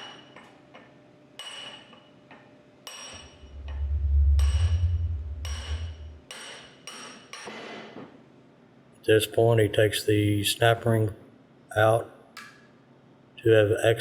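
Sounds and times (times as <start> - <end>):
loud low hum: 3.2 - 6.3.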